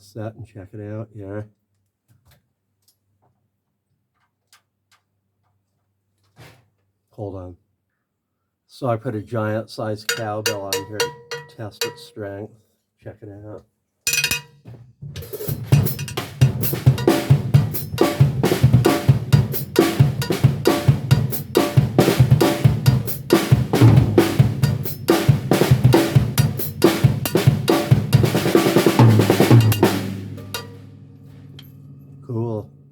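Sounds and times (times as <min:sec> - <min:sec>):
drum kit playing: 0:10.1 - 0:12.1, 0:14.1 - 0:14.5, 0:15.1 - 0:32.9
cowbell struck: 0:10.1 - 0:12.2, 0:14.1 - 0:14.6, 0:15.6 - 0:21.8, 0:22.4 - 0:32.2.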